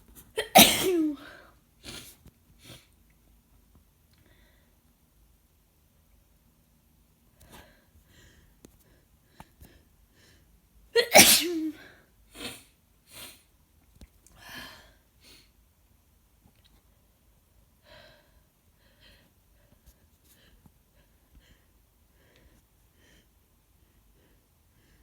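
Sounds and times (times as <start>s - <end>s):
person sneezing: 0.4s - 1.3s, 11.0s - 11.8s.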